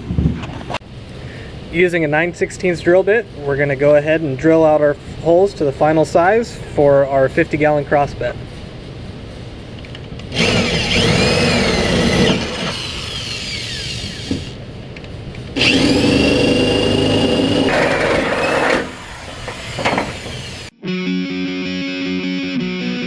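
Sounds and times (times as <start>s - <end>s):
power drill drilling sheet metal: 10.3s - 14.6s, 15.6s - 20.7s
drill bit squealing: 10.4s - 14.6s, 15.6s - 20.7s.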